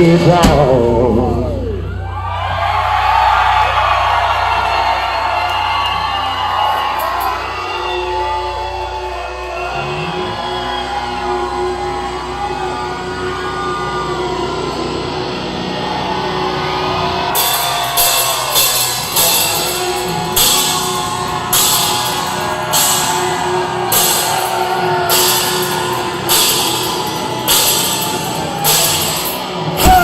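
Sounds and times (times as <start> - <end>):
drum kit: 0.0 - 2.0, 17.3 - 30.0
electric guitar: 0.0 - 30.0
cymbal crashes: 17.4 - 30.0.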